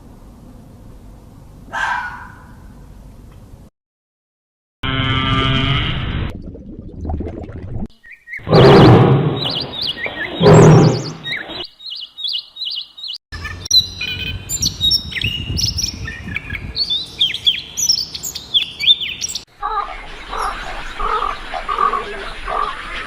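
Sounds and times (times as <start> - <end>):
birds chirping and tweeting: 7.9 - 23.0
harsh bird calls: 8.0 - 23.0.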